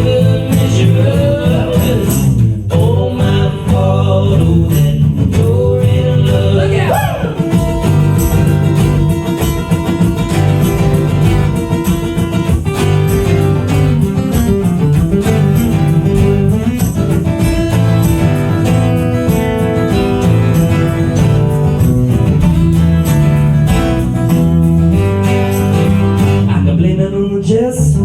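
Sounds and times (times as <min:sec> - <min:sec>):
acoustic guitar strumming chords: 0:00.0 - 0:28.0
sliding lead melody: 0:06.5 - 0:26.5.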